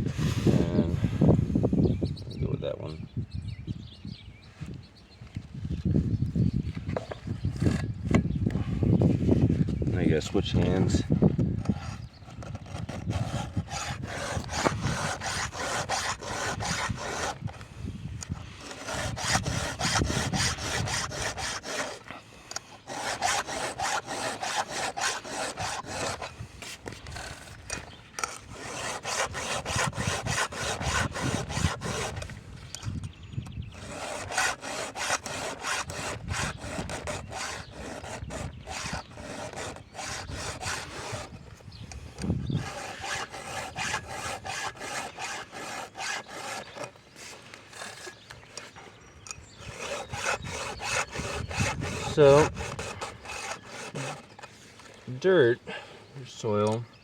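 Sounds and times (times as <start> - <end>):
hand file rasping on chainsaw chain: 11.6 - 17.6, 18.2 - 32.9, 33.7 - 55.3.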